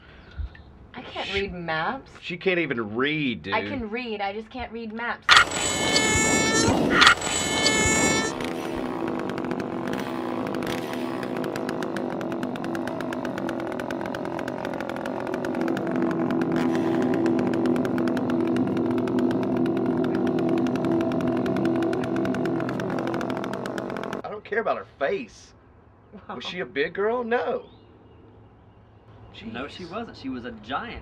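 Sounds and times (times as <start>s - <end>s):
chainsaw running: 5.3s - 24.2s.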